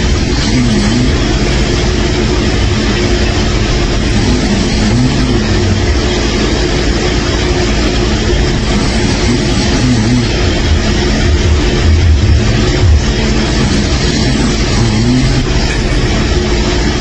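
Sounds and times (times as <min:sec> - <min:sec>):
person snoring loudly: 0:00.0 - 0:03.0, 0:03.8 - 0:06.3, 0:08.4 - 0:16.2
constant noisy roar: 0:00.0 - 0:17.0.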